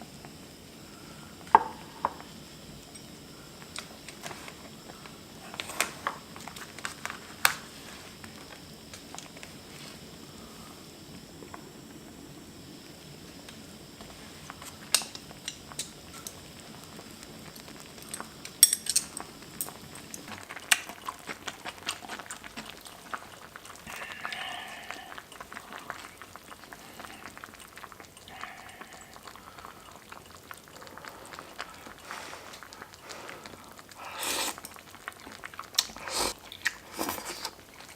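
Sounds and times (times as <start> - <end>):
metal utensils clinking on bowl: 18.6 - 19.2
wet slurping: 20.3 - 34.8, 35.7 - 37.6.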